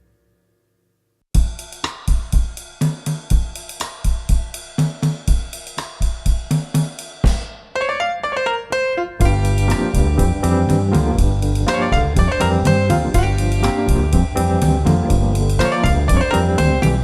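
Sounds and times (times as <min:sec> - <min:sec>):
drum-kit beat: 0:01.4 - 0:07.8, 0:09.2 - 0:17.0
keyboard chords: 0:07.8 - 0:17.0.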